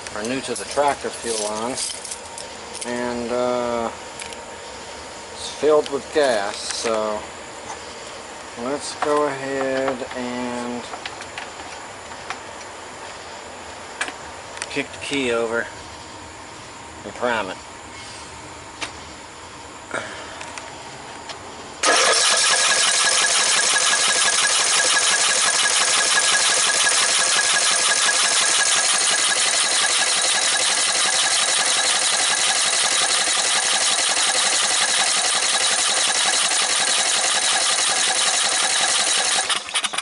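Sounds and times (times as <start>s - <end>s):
lawn tractor engine turning over: 21.8s - 40.0s.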